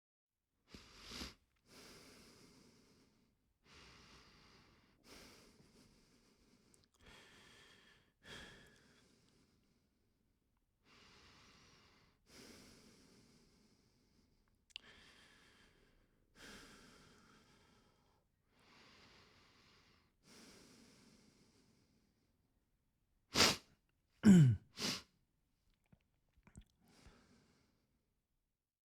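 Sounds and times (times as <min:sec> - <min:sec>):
person breathing quietly: 0:00.7 - 0:10.0, 0:10.8 - 0:22.3, 0:26.8 - 0:27.8.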